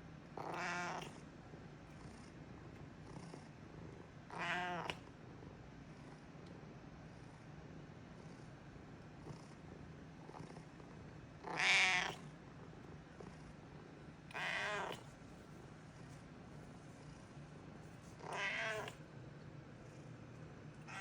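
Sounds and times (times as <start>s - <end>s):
cat meowing: 0.4s - 1.1s, 4.3s - 4.9s, 11.5s - 12.2s, 14.3s - 15.0s, 18.2s - 19.0s.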